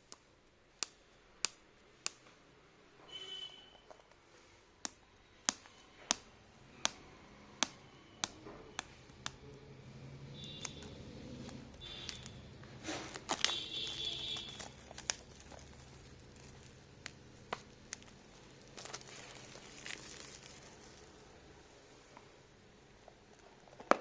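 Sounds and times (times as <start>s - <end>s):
packaging crinkling and tearing: 10.4s - 21.3s.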